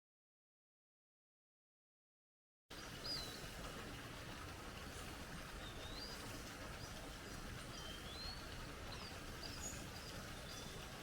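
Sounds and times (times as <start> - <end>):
faint outdoor hiss: 2.7 - 11.0
whistled bird calls: 7.7 - 11.0.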